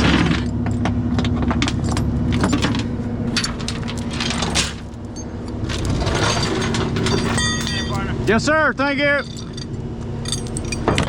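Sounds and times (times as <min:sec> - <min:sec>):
metal parts clattering: 0:00.0 - 0:08.4, 0:09.0 - 0:11.0
engine hum: 0:00.0 - 0:11.0.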